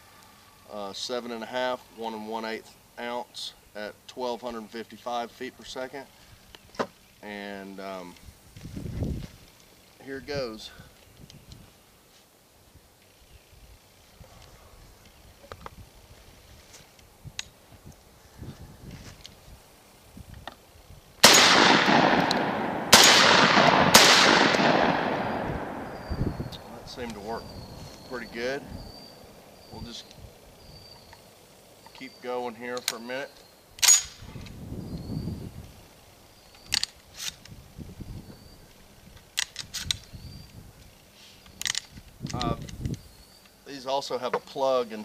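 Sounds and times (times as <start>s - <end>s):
shotgun shots with rolling echo: 21.2s - 26.8s.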